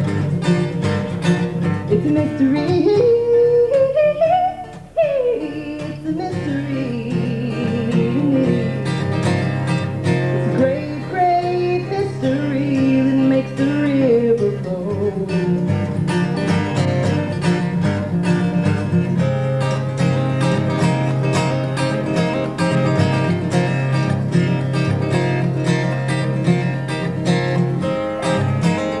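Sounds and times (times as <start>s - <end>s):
strummed acoustic guitar: 0.0s - 29.0s
woman singing: 1.9s - 9.2s, 10.4s - 15.8s.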